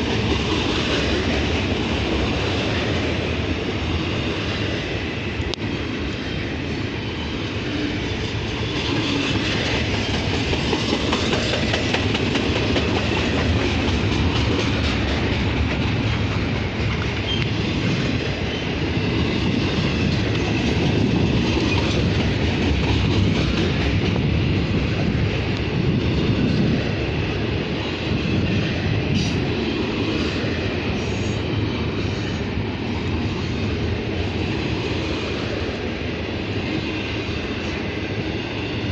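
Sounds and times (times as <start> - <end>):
freight train rumbling by: 0.0 - 38.9.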